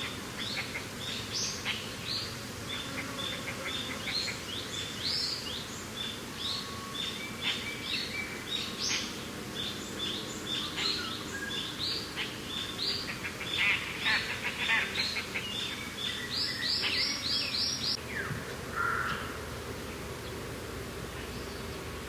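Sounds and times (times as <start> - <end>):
birds chirping: 0.0 - 20.4.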